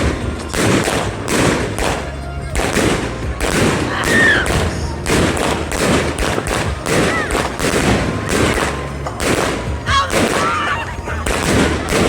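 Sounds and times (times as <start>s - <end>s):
firework cake bangs: 0.0s - 12.0s.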